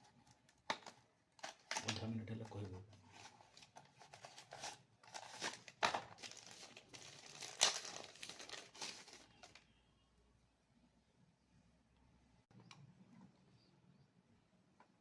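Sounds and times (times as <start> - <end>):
packaging crinkling: 0.8 - 9.6.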